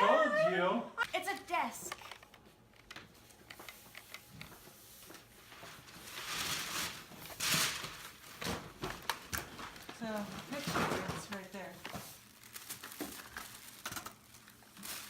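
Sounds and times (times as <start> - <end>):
paper rustling and tearing: 5.5 - 15.0.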